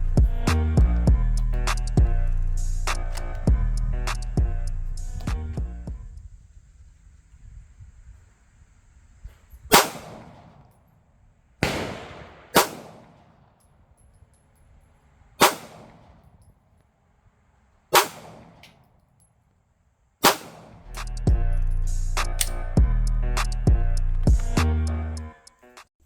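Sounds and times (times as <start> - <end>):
pistol shots: 9.7 - 10.7, 11.6 - 13.6, 15.4 - 16.4, 17.9 - 18.9, 20.2 - 21.1.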